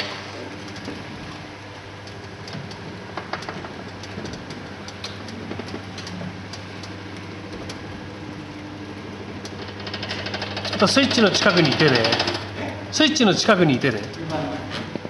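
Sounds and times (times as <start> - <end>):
gear motor humming: 0.0 - 15.0
sharp clicks and ticks: 2.0 - 8.1, 9.4 - 12.6, 13.5 - 15.0.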